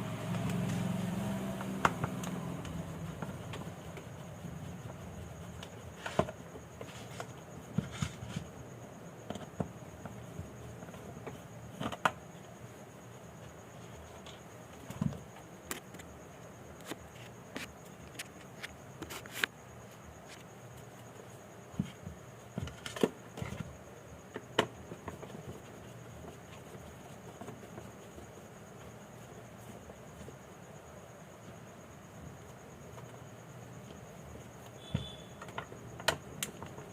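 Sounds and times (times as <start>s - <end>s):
hand tools clicking and tapping: 0.2s - 4.2s
faint steady high tone: 34.6s - 35.6s.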